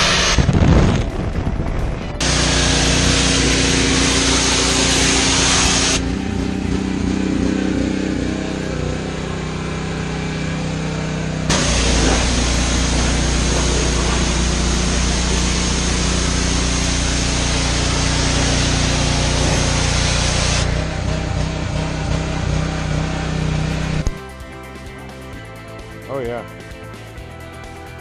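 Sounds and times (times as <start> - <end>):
high-pressure water jet hissing: 0.0 - 0.7, 2.2 - 6.0, 11.5 - 20.7
pressure washer engine running: 0.0 - 0.9, 2.2 - 24.2.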